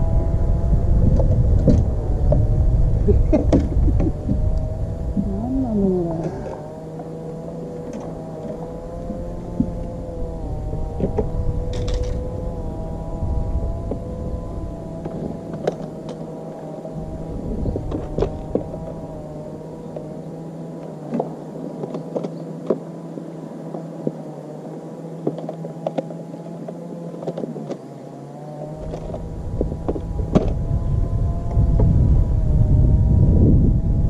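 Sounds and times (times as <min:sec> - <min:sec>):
low rumble: 0:00.0 - 0:16.2, 0:16.8 - 0:20.3, 0:28.8 - 0:34.0
boat motor whining: 0:00.0 - 0:34.0.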